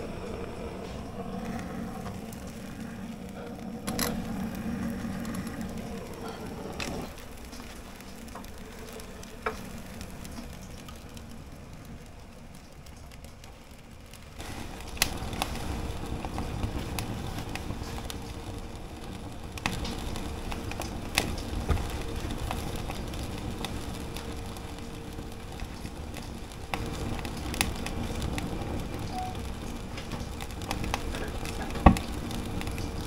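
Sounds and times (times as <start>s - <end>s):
firewood crackling in a stove: 0.0s - 33.0s.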